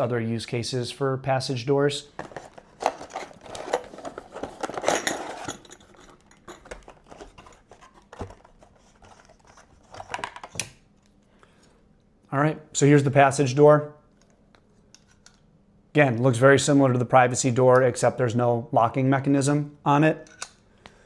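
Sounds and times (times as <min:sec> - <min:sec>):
packaging rustling: 0:02.1 - 0:10.5.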